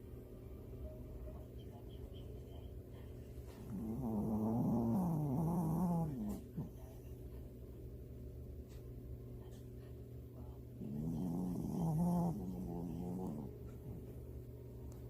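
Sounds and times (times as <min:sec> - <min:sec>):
faint low hum: 0:00.0 - 0:15.0
person snoring: 0:03.7 - 0:06.3, 0:10.9 - 0:13.5.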